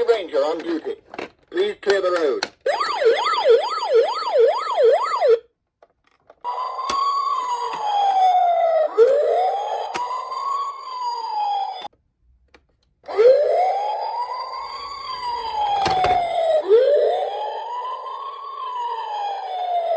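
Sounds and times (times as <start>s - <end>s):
toy siren wailing: 2.7s - 5.4s, 6.4s - 11.9s, 13.1s - 19.9s.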